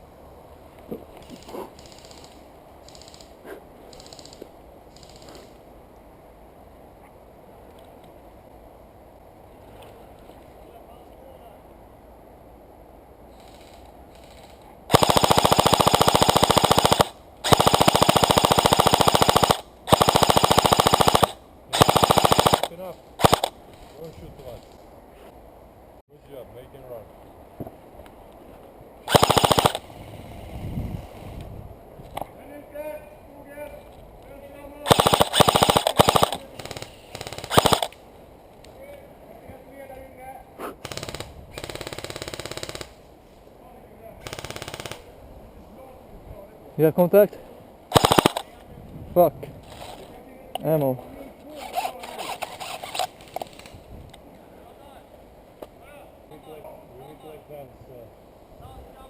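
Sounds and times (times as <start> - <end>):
airsoft rifle automatic fire: 14.9 - 23.6, 29.1 - 29.9, 34.9 - 38.0, 40.8 - 43.0, 44.2 - 45.0, 47.9 - 48.5.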